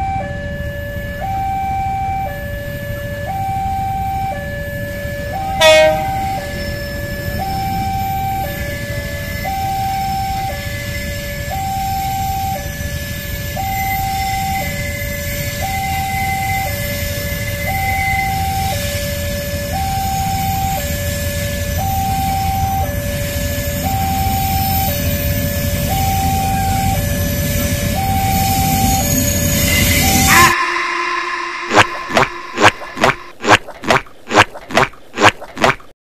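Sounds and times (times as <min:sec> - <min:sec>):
two-tone warning siren: 0:00.0 - 0:35.8
steady low rumble: 0:30.5 - 0:35.2.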